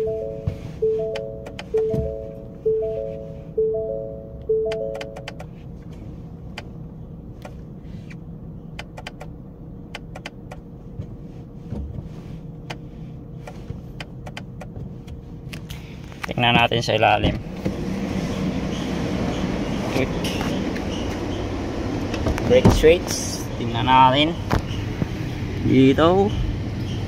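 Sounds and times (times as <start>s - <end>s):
two-tone car warning chime: 0.0s - 5.4s.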